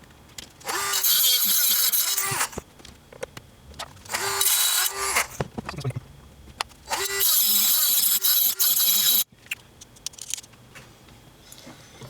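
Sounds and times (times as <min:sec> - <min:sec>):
rotary tool grinding: 0:00.6 - 0:02.6, 0:04.1 - 0:05.4, 0:06.9 - 0:09.3.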